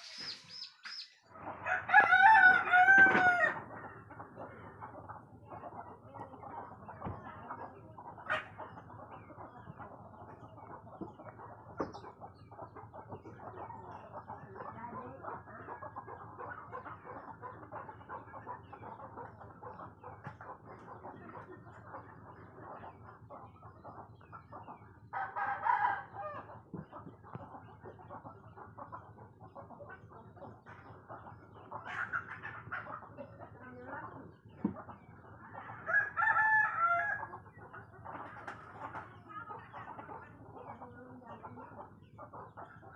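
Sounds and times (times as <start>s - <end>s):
chickens clucking: 0.0s - 42.9s
roosters crowing: 1.4s - 3.9s, 25.2s - 26.6s, 35.7s - 37.4s.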